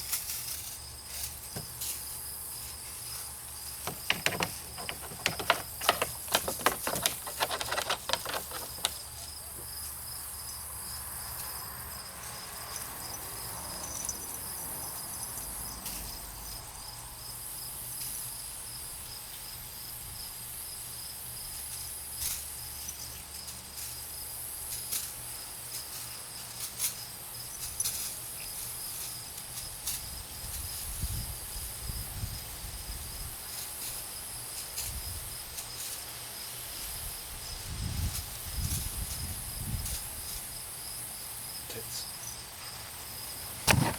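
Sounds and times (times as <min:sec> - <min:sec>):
insects chirring: 0:00.3 - 0:43.9
clicks and rustles: 0:03.7 - 0:09.7, 0:43.6 - 0:43.9.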